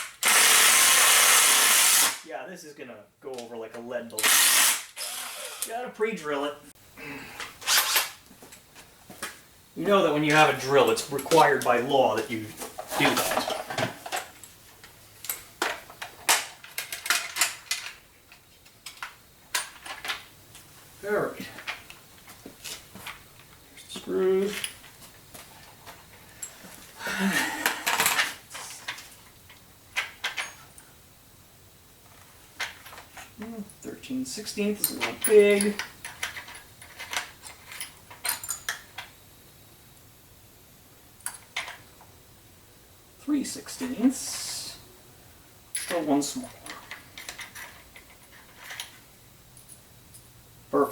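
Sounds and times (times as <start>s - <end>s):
steel drill bits clinking: 4.2s - 5.7s, 7.6s - 8.2s
tools clicking and clinking: 34.8s - 39.1s.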